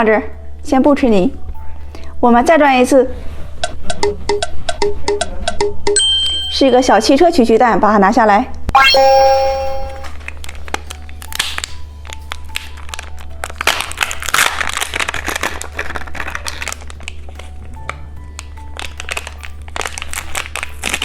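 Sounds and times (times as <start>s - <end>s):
faint background music: 0.0s - 8.8s, 9.4s - 21.0s
plastic wrapper crinkling and tearing: 10.1s - 17.6s, 18.3s - 21.0s.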